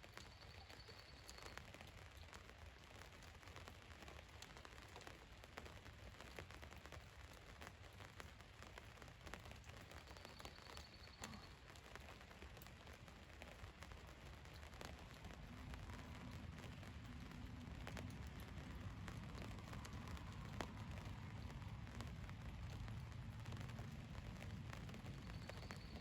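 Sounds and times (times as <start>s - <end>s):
rain on a vehicle roof: 0.0s - 26.0s.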